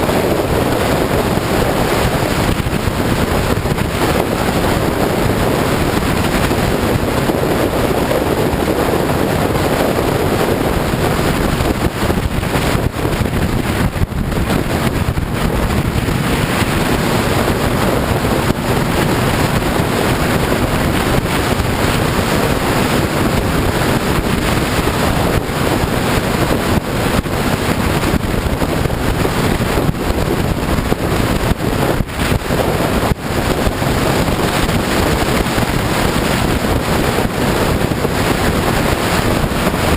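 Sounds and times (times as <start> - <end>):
motorcycle engine: 0.0 - 39.9
road noise: 0.0 - 39.9
wind buffeting microphone: 0.0 - 39.9.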